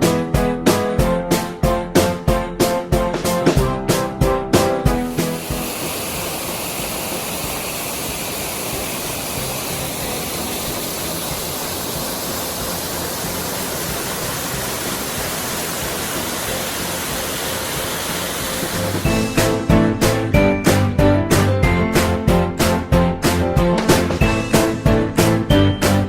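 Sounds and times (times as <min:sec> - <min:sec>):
music with a beat: 0:00.0 - 0:05.8, 0:16.6 - 0:26.0
waterfall rushing: 0:05.1 - 0:19.7.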